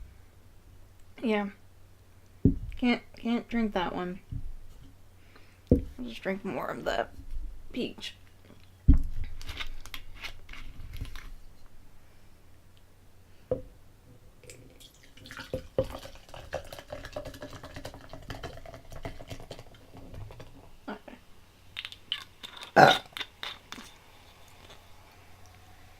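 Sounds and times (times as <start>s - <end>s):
thump: 2.4s - 2.8s
drink pouring into a glass: 14.4s - 20.6s
small clicks and splashes: 14.4s - 20.6s.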